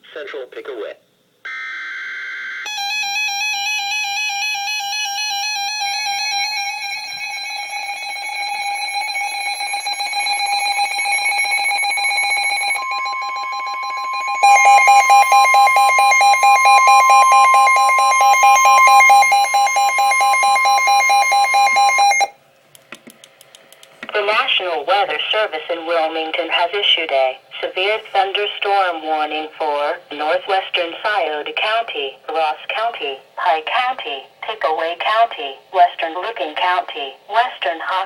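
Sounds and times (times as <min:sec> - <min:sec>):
electronic alarm tone: 0:01.5 - 0:22.3
higher steady tone: 0:06.7 - 0:22.3.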